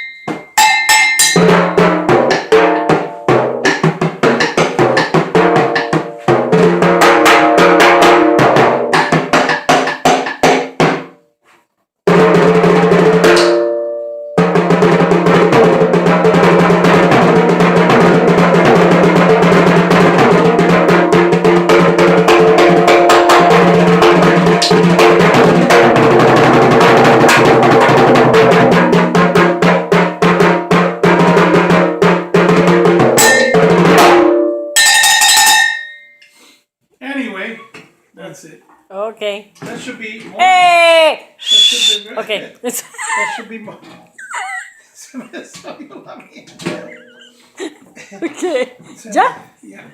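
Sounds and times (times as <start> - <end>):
drum kit playing: 0.0 - 11.1, 12.1 - 35.4.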